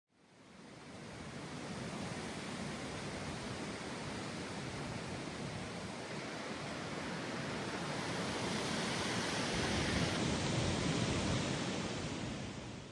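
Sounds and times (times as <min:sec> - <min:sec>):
strong gusty wind: 0:03.1 - 0:12.9.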